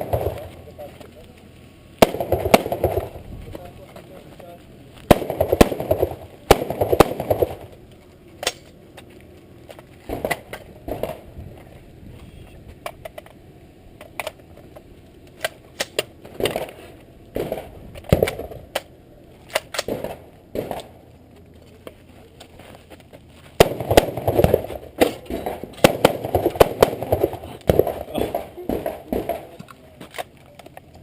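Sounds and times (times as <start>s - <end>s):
rifle shots: 0.0s - 0.6s, 2.0s - 3.2s, 5.1s - 7.8s, 10.1s - 11.3s, 15.4s - 18.8s, 19.5s - 21.0s, 23.6s - 29.6s.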